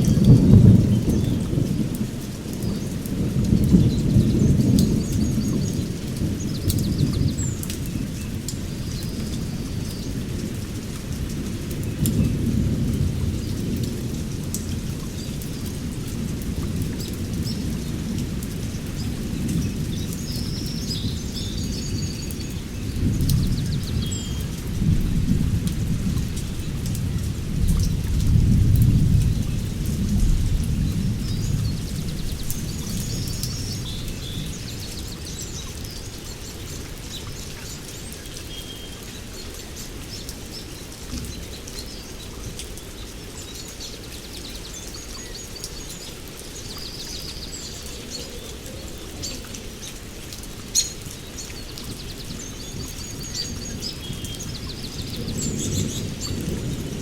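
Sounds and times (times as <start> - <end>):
thunder rumbling: 0.0 - 9.8, 22.8 - 34.8, 53.6 - 57.0
heavy rain: 0.0 - 57.0.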